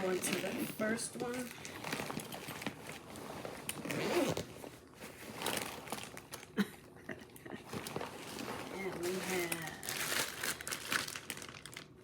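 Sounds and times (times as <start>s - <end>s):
zipper being pulled open: 1.8s - 4.6s.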